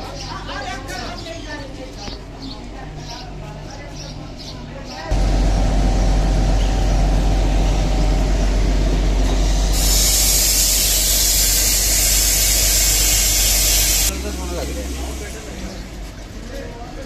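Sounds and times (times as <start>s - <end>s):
train carriages rumbling on rails: 5.1s - 17.0s
strong hiss: 9.0s - 15.8s.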